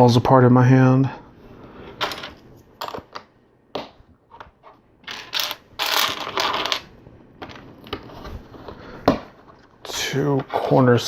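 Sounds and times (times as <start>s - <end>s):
plastic pieces clicking and clattering: 5.0s - 8.0s.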